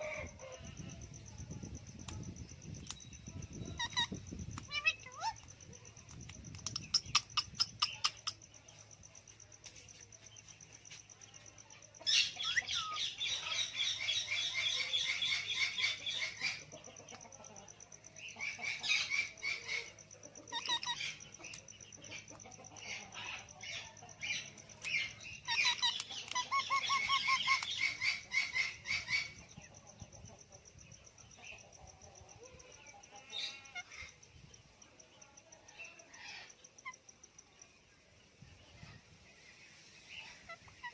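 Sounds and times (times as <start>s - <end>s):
parrot chattering calls: 3.8s - 5.4s, 20.5s - 21.2s, 24.9s - 29.4s.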